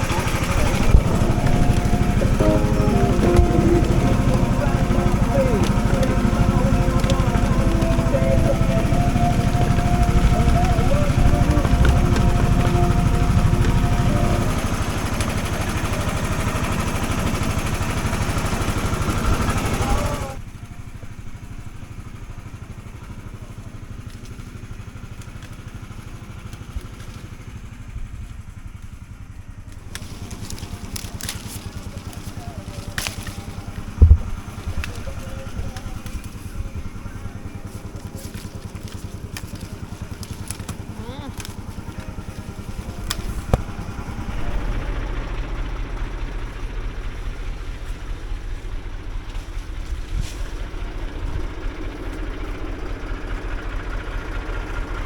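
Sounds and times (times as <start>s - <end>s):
farm machine engine running: 0.0s - 55.0s.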